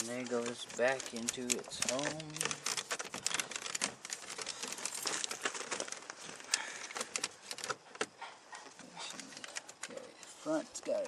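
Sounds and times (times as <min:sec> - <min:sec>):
plastic trim clicking and crinkling: 0:00.0 - 0:08.2, 0:09.1 - 0:10.3.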